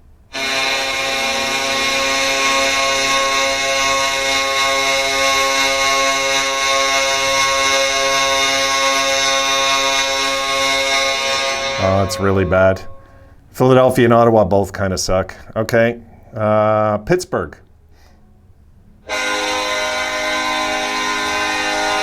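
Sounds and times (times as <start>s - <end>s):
goal horn blast: 0.3s - 13.5s, 19.1s - 22.0s.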